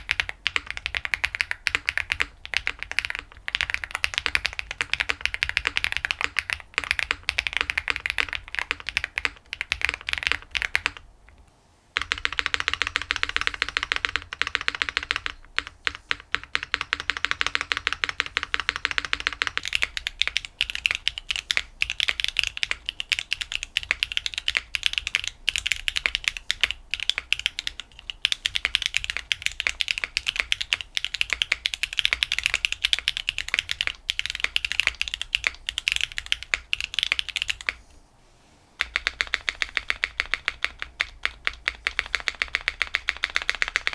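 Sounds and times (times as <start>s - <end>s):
typing on mechanical keyboard: 0.0s - 11.4s, 12.0s - 37.8s, 38.8s - 43.9s.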